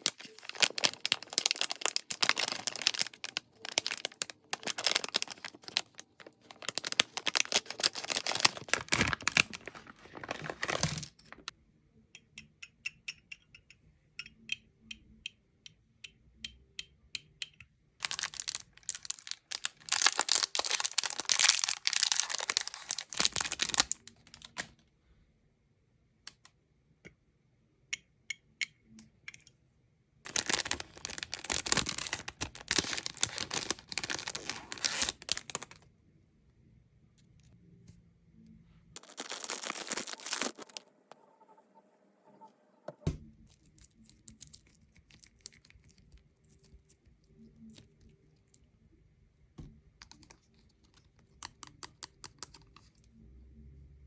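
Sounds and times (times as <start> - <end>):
plastic packaging crinkling and tearing: 0.0 - 11.5, 18.0 - 24.8, 30.3 - 35.8, 39.0 - 40.9.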